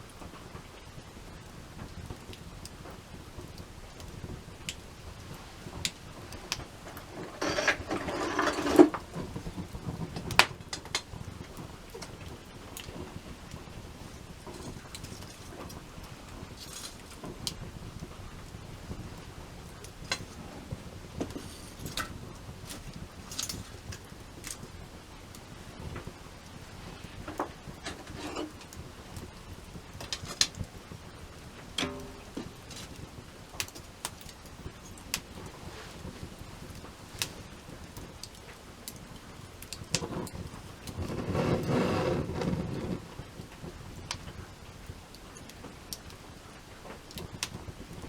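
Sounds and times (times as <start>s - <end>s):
campfire crackling and popping: 0.0s - 48.0s.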